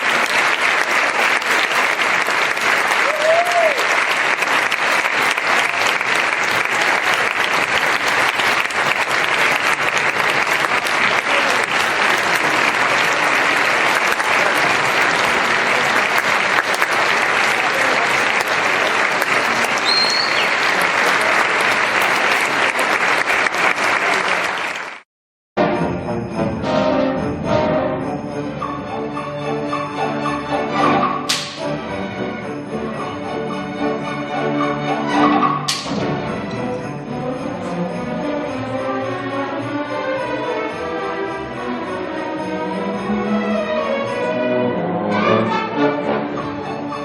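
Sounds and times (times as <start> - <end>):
music: 0.0 - 24.6, 25.6 - 47.0
crackling applause-like patter: 0.0 - 25.1.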